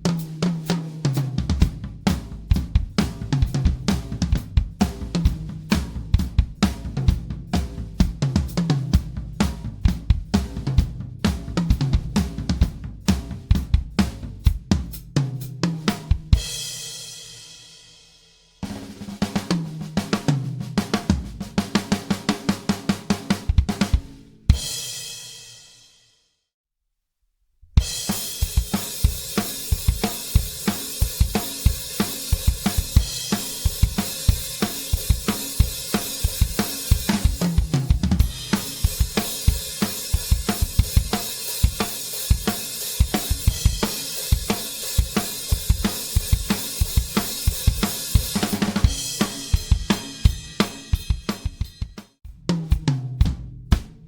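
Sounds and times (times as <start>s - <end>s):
drum kit groove: 0.0s - 26.0s, 27.7s - 54.0s
drum fill: 18.6s - 25.2s, 27.8s - 54.0s.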